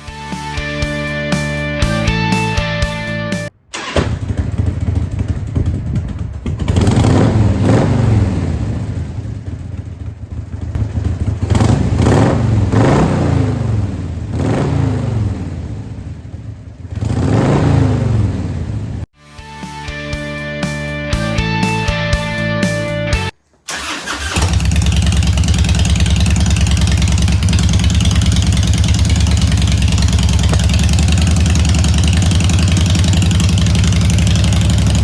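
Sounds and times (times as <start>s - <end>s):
motorcycle engine idling and revving: 3.9s - 19.1s, 23.7s - 35.0s.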